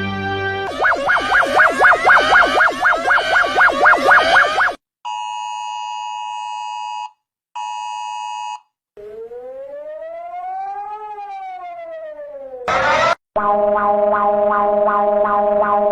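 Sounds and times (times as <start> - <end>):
fast warbling alert tone: 0.7 - 4.8, 9.9 - 15.9
multi-pitch attention tone: 0.7 - 4.8, 12.7 - 15.9
siren rising and falling: 0.7 - 4.8, 9.0 - 15.9.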